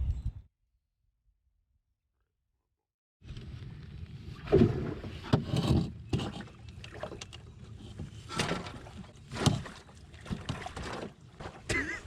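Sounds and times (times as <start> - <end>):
canoe knocking and splashing: 4.4 - 12.0.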